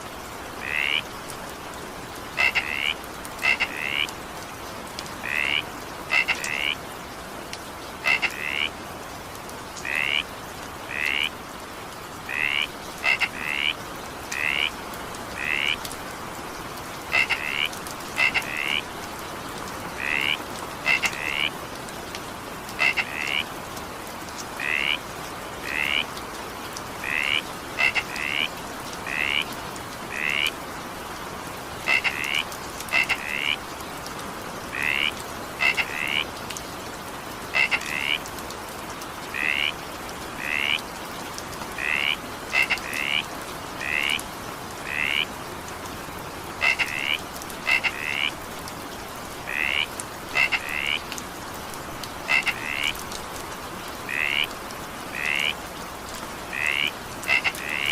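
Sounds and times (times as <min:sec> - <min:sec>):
rain hiss: 0:00.0 - 0:57.9
frog calling: 0:00.6 - 0:01.1, 0:02.4 - 0:04.1, 0:05.2 - 0:06.8, 0:08.0 - 0:08.7, 0:09.8 - 0:10.3, 0:10.9 - 0:11.3, 0:12.3 - 0:14.8, 0:15.4 - 0:15.8, 0:17.1 - 0:18.9, 0:20.0 - 0:21.5, 0:22.8 - 0:23.5, 0:24.6 - 0:25.0, 0:25.6 - 0:26.1, 0:27.0 - 0:29.5, 0:30.1 - 0:30.5, 0:31.8 - 0:33.6, 0:34.7 - 0:36.3, 0:37.5 - 0:38.2, 0:39.3 - 0:39.8, 0:40.4 - 0:40.8, 0:41.8 - 0:44.2, 0:44.8 - 0:45.3, 0:46.6 - 0:48.4, 0:49.5 - 0:51.1, 0:52.2 - 0:53.0, 0:54.1 - 0:54.5, 0:55.1 - 0:55.6, 0:56.5 - 0:57.9.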